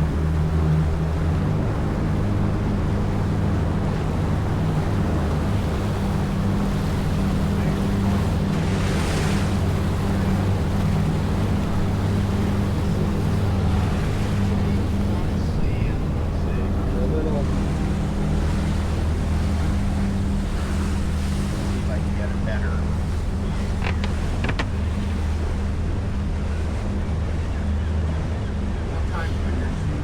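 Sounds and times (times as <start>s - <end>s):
boat engine running: 0.0s - 30.0s
water rushing past hull: 0.0s - 30.0s
wind on microphone: 23.1s - 28.9s.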